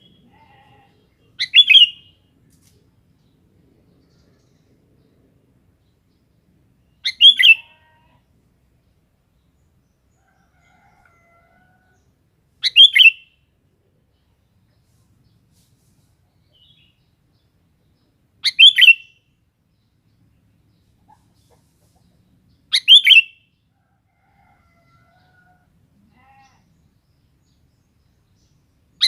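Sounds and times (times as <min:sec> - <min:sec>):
bulbul chirping call: 0:01.4 - 0:02.1, 0:12.6 - 0:13.2, 0:18.4 - 0:19.1, 0:22.7 - 0:23.4.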